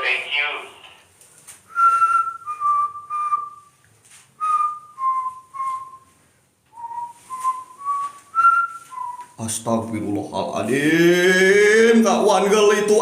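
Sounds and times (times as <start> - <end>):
person whistling a tune: 1.7 - 3.7, 4.4 - 6.1, 6.7 - 9.4.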